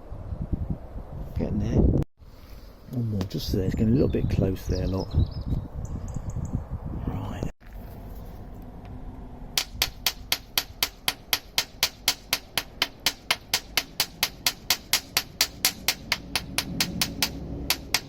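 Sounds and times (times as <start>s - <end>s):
rapid regular sharp clicks: 9.6s - 18.0s.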